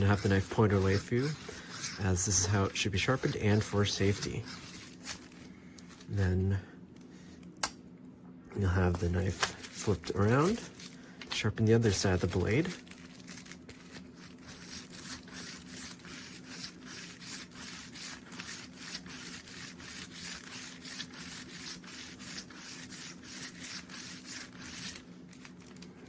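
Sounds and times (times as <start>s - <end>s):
knife sharpener scraping blade: 0.0s - 5.4s, 9.1s - 11.0s, 13.7s - 25.5s.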